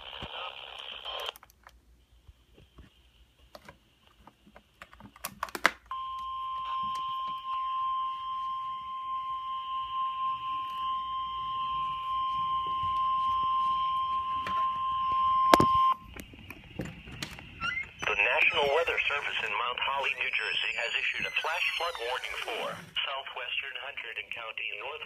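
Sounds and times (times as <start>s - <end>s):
steady high alarm tone: 5.9s - 16.1s, 17.6s - 23.0s.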